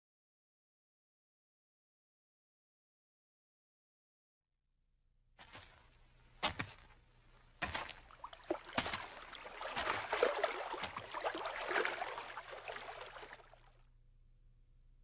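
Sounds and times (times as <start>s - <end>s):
water splashing and dripping: 7.6s - 13.7s.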